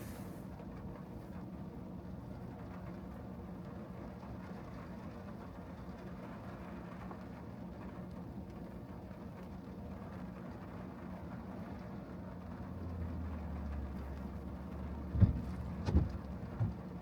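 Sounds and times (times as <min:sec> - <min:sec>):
car engine hum: 0:00.0 - 0:00.4, 0:13.6 - 0:17.0
tyre hiss on wet road: 0:00.0 - 0:00.4.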